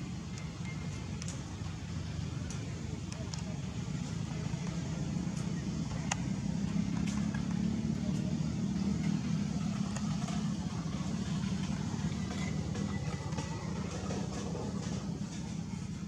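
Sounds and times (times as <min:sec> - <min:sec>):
motor engine humming: 0:00.0 - 0:16.0.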